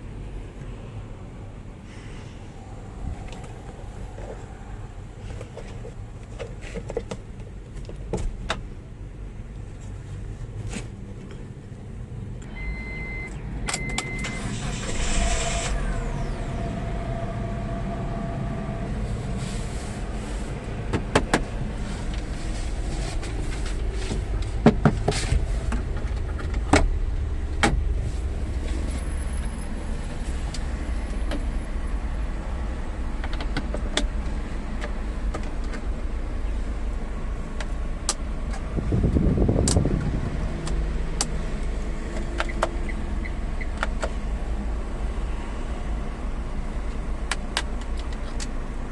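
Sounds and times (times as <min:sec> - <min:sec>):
van engine rumble: 0:00.0 - 0:48.9
short beeps: 0:12.5 - 0:14.4
electric whine: 0:14.6 - 0:19.0.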